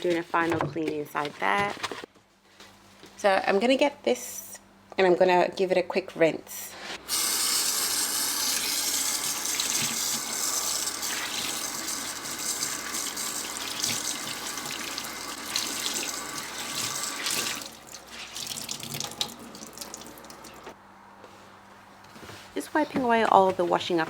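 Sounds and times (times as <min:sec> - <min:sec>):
cloth rinsed under water: 0:09.4 - 0:20.7
water splashes and drips: 0:10.8 - 0:20.7.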